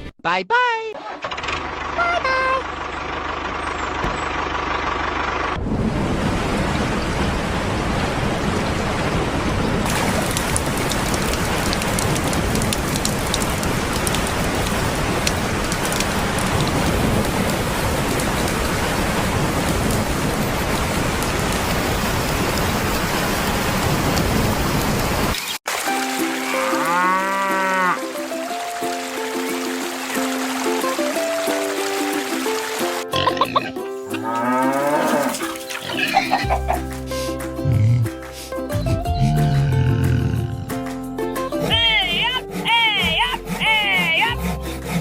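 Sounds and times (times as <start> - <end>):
steady rain falling: 5.8 - 33.1.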